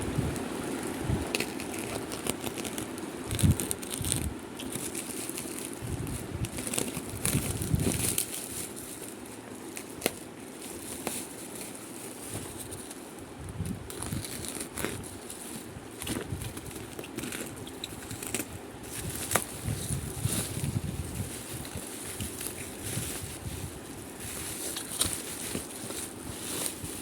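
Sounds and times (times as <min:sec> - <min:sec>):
packaging crinkling: 0:00.3 - 0:27.0.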